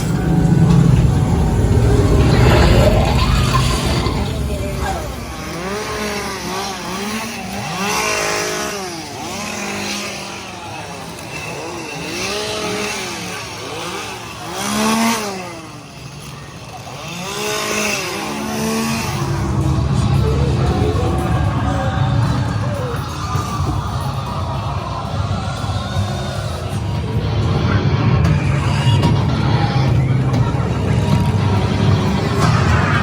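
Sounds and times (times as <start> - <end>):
chainsaw engine revving: 0.0 - 33.0.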